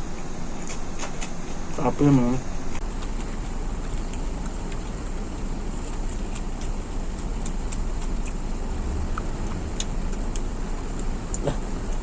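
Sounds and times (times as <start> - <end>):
rumbling background noise: 0.0 - 12.0
person chewing food: 2.7 - 12.0.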